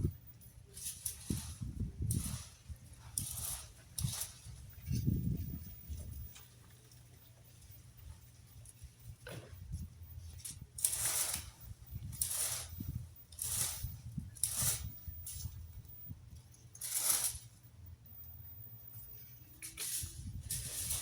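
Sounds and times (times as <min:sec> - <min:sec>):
wind rumble on microphone: 0:00.0 - 0:00.4, 0:01.0 - 0:06.4, 0:09.0 - 0:16.4, 0:20.0 - 0:21.0
rake scraping dry leaves: 0:00.7 - 0:06.4, 0:10.2 - 0:15.9, 0:16.8 - 0:17.6, 0:19.2 - 0:21.0.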